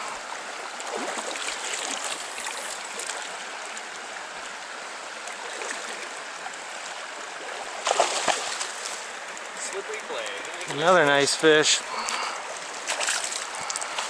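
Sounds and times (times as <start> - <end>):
river water rushing: 0.0 - 14.0.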